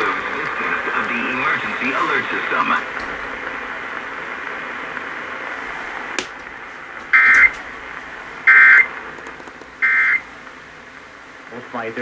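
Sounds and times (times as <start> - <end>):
radio hiss: 0.0 - 12.0
screechy digital data tones: 8.5 - 8.9, 9.8 - 10.2.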